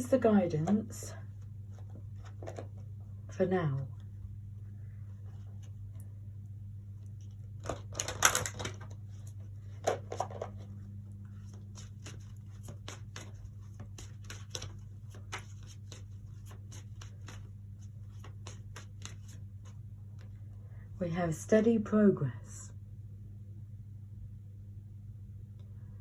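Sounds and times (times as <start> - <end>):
steady low hum: 0.0 - 26.0
cards shuffling rustle: 1.7 - 2.9, 7.6 - 10.7, 11.3 - 19.8.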